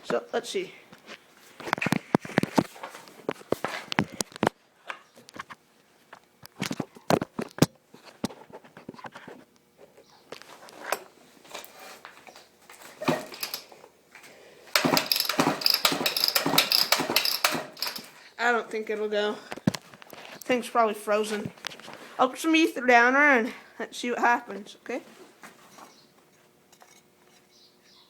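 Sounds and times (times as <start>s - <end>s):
chainsaw recoil starter clatter: 13.0s - 13.8s, 14.7s - 18.2s.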